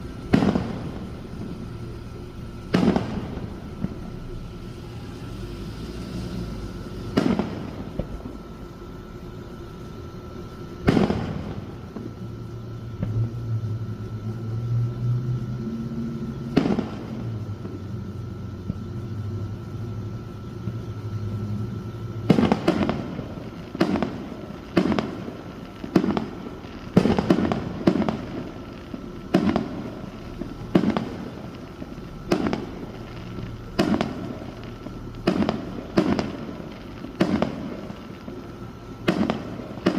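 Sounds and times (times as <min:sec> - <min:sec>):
fireworks bursting: 0:00.0 - 0:13.4, 0:15.8 - 0:18.9, 0:20.5 - 0:39.9.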